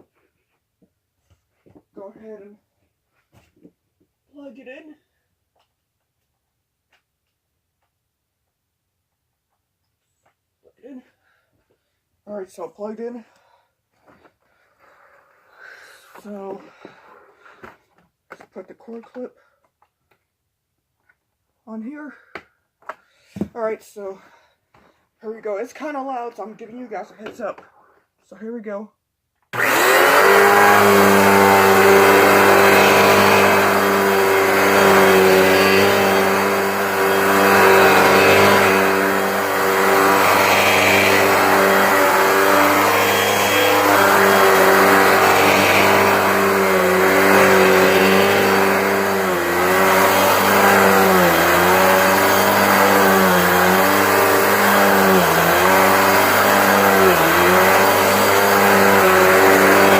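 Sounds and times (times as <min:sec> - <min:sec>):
vacuum cleaner motor whine: 0:29.6 - 0:59.9.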